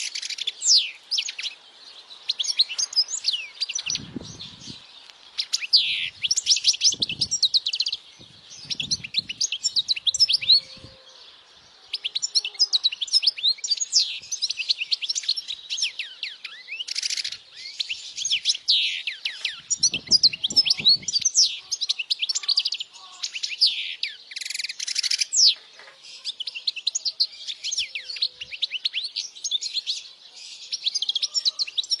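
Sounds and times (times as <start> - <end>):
goldfinch singing: 0.0 - 11.3.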